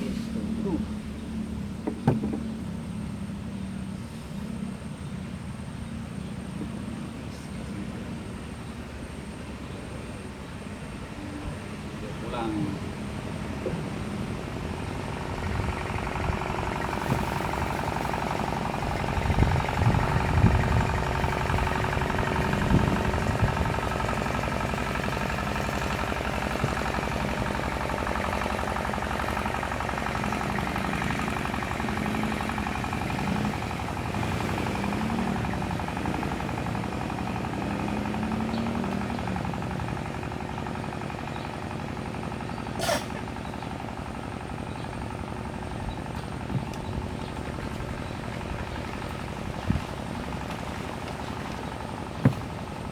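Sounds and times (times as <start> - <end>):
boat engine knocking: 0.0 - 52.9.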